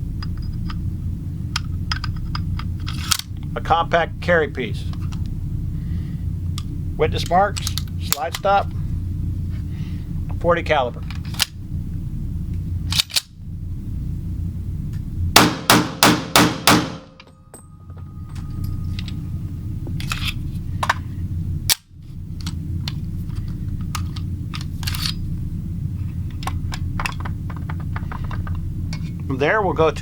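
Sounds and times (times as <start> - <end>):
steady low rumble: 0.0 - 30.0
pistol shots: 15.4 - 17.1.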